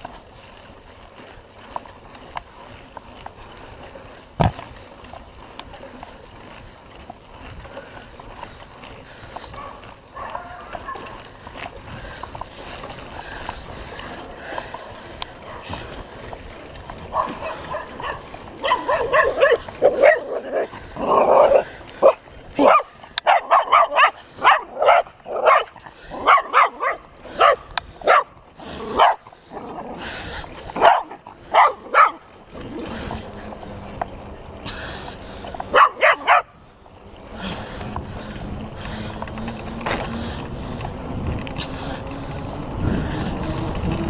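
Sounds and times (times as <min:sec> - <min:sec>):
dog barking: 0:09.6 - 0:11.1, 0:17.1 - 0:28.3, 0:28.9 - 0:29.2, 0:30.8 - 0:32.2, 0:35.7 - 0:36.5.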